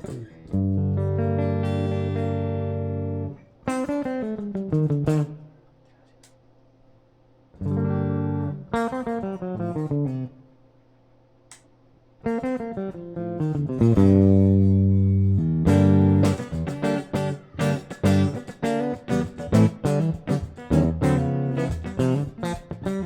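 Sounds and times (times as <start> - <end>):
electric guitar chords and runs: 0.0 - 5.4, 7.6 - 10.3, 12.3 - 23.0.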